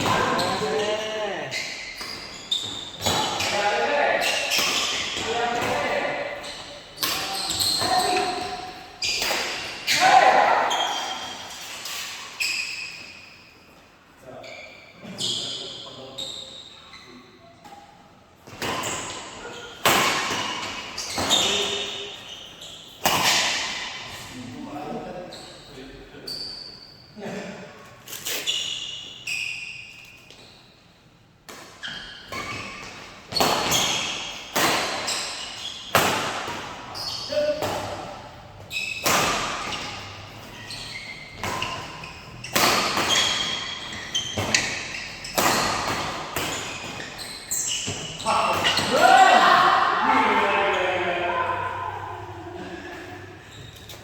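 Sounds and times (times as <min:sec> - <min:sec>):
shoes squeaking on court: 0:00.0 - 0:10.0, 0:10.6 - 0:24.0, 0:25.2 - 0:27.2, 0:27.8 - 0:31.0, 0:31.6 - 0:49.4, 0:53.1 - 0:54.0
badminton racket hitting shuttlecock: 0:32.4 - 0:49.1.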